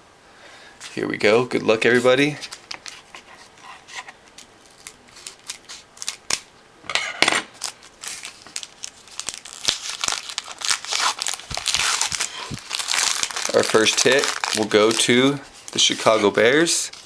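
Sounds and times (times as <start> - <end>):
wrapper crinkling and tearing: 2.4 - 6.5, 7.6 - 17.0.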